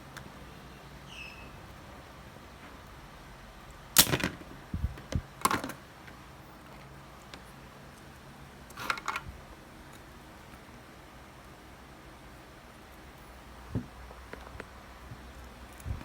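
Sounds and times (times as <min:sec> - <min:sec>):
dull thumps: 0:13.7 - 0:14.0.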